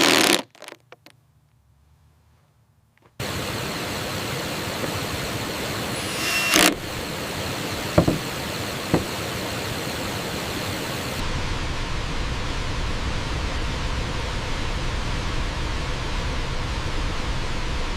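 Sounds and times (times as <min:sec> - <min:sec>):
sharp knocks: 0:08.0 - 0:08.3, 0:08.9 - 0:09.2.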